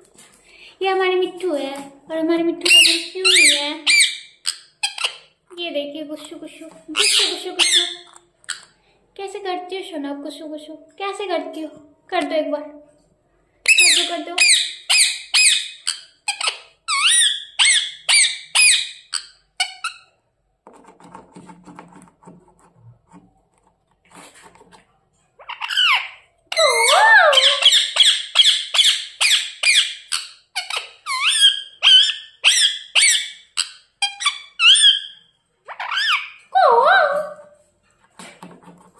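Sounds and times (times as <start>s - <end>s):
parrot squeaky calls: 2.7s - 5.3s, 6.9s - 8.7s, 13.7s - 20.1s, 25.4s - 37.5s.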